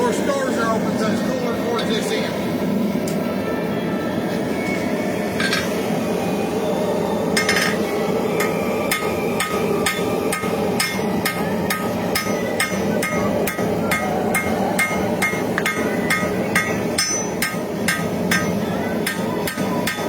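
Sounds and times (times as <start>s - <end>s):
hammer striking steel on anvil: 7.4s - 7.8s, 8.4s - 20.0s.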